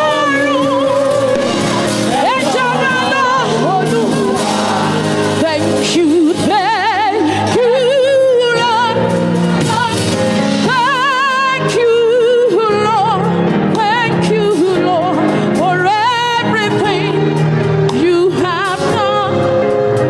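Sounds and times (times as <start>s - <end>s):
sustained accompaniment chords: 0.0s - 6.8s
person singing with vibrato: 0.0s - 17.3s.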